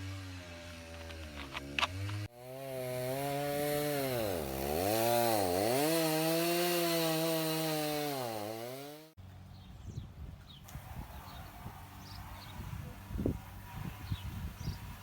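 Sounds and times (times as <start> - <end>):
chainsaw running at high revs: 0.0 - 9.2.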